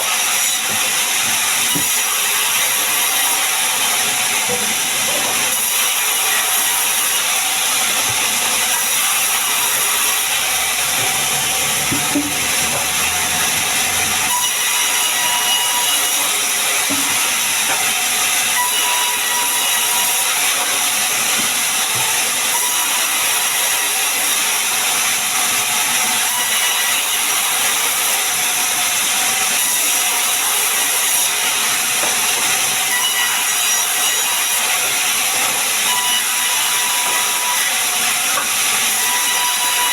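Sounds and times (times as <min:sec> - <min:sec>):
saw cutting wood: 0:00.0 - 0:39.9.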